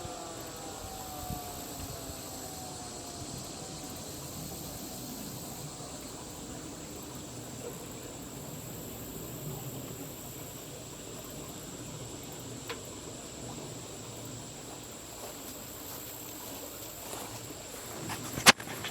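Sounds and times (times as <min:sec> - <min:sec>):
insects droning: 0:00.0 - 0:18.9.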